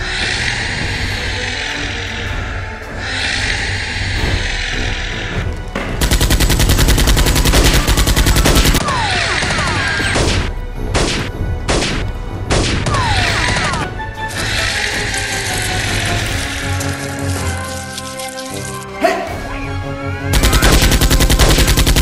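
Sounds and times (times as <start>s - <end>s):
toy blaster automatic burst: 6.0s - 9.7s, 20.3s - 22.0s.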